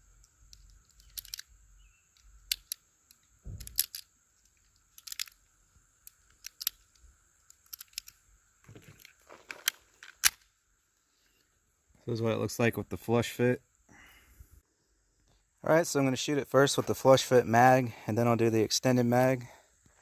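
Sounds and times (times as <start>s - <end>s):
cartridges clicking into magazine: 0.2s - 1.5s, 2.2s - 4.1s, 4.7s - 5.4s, 6.0s - 8.2s, 9.0s - 10.4s.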